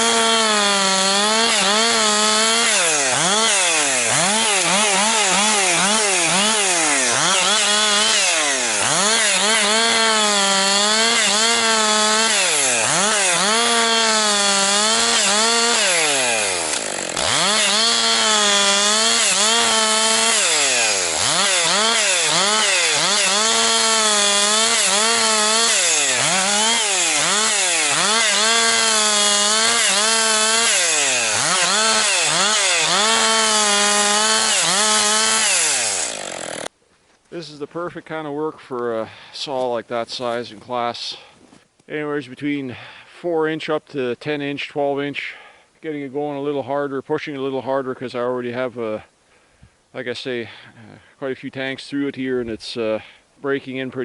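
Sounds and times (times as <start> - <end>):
chainsaw cutting firewood: 0.0 - 36.7.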